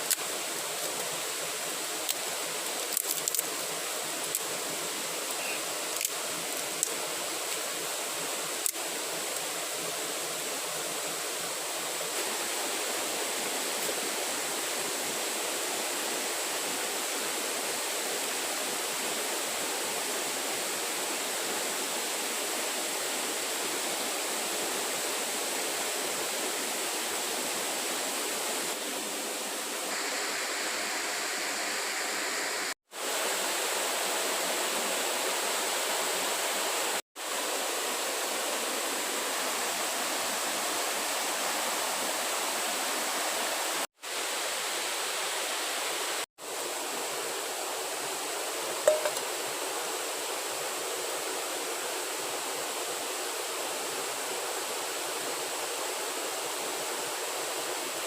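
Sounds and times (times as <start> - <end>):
running water rushing: 0.0 - 58.0
faint high-pitched tone: 48.9 - 49.3.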